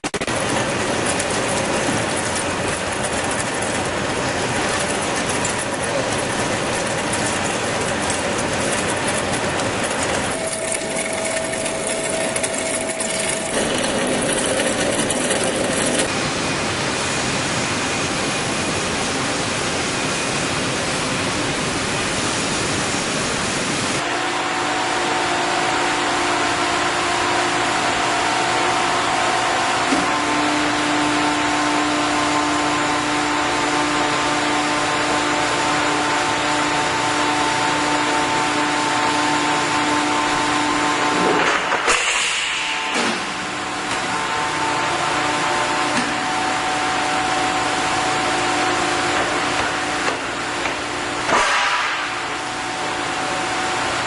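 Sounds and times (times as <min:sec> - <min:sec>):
metal lathe cutting: 0:00.0 - 0:16.1
ringing tones from metal work: 0:10.0 - 0:16.0.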